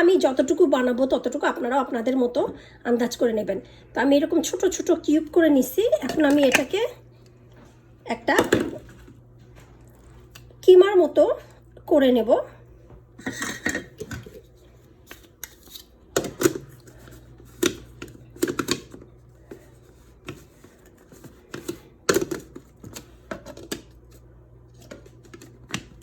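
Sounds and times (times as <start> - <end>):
steady low hum: 0.0 - 26.0
kitchen utensils clicking: 13.2 - 14.4.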